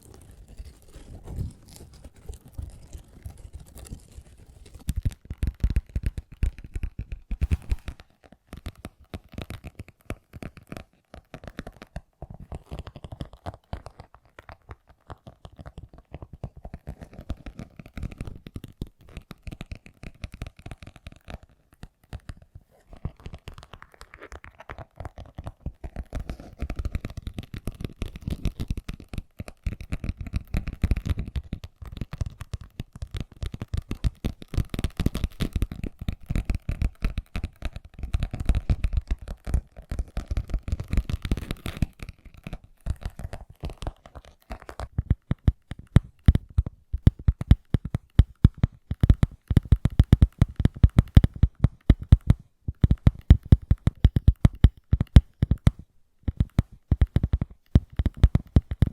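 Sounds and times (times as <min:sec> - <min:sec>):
fingertips scratching a surface: 0:00.0 - 0:04.9
fingertip taps: 0:25.3 - 0:58.9.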